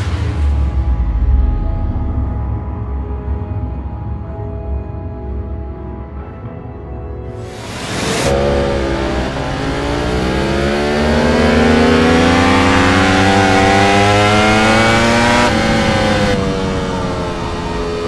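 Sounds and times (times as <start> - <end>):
motorcycle engine revving: 7.4 - 18.0.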